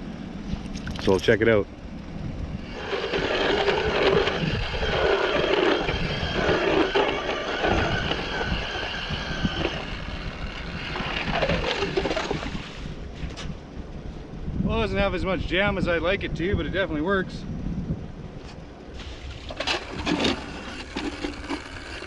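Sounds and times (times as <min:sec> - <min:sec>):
ice auger motor whine: 0:02.5 - 0:13.0, 0:19.2 - 0:22.0
auger grinding through ice: 0:02.6 - 0:13.0, 0:19.0 - 0:22.0.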